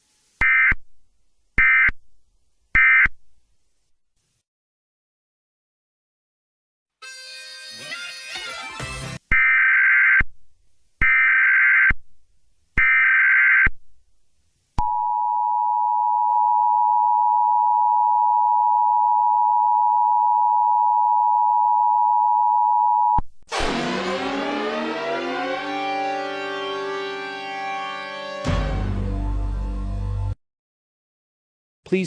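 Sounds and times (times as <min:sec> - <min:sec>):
siren-like wail: 0:23.5 - 0:28.4.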